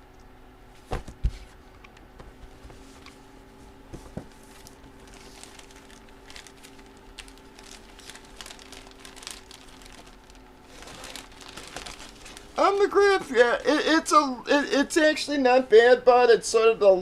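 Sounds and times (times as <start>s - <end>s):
plastic packaging crinkling: 4.4s - 14.0s.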